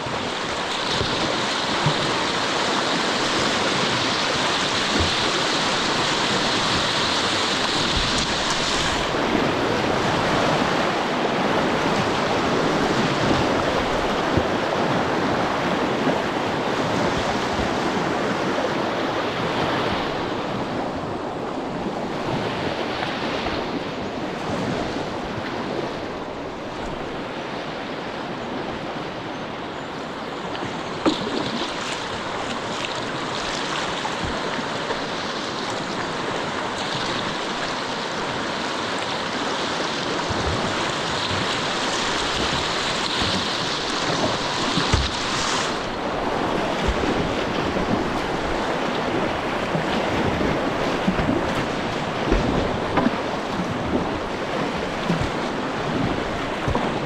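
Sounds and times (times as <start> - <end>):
river rapid rushing water: 0.0 - 57.0.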